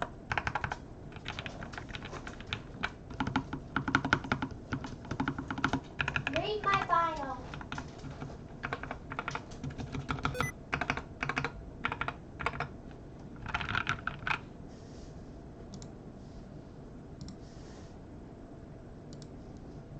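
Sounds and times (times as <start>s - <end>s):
mechanical keyboard typing: 0.3s - 6.4s, 7.5s - 12.7s, 13.4s - 14.4s.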